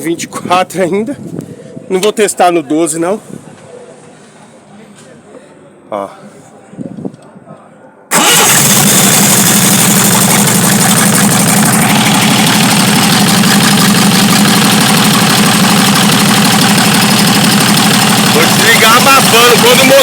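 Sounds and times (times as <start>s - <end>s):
diesel truck engine running: 8.1s - 20.0s.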